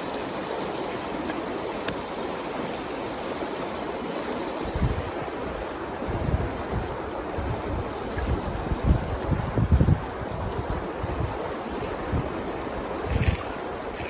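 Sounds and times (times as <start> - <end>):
river water flowing: 0.0 - 14.0
wind buffeting microphone: 4.6 - 14.0.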